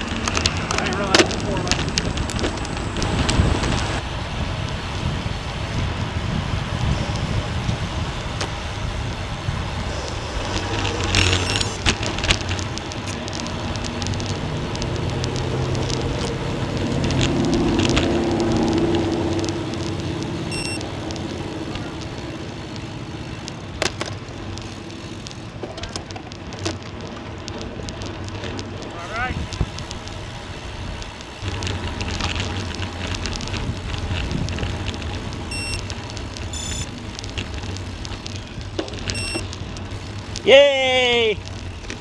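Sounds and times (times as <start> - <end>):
scattered clicks: 0.0 - 4.0, 9.9 - 42.0
wind rushing over microphone: 0.0 - 23.8, 26.9 - 42.0
motor vehicle passing: 0.0 - 42.0.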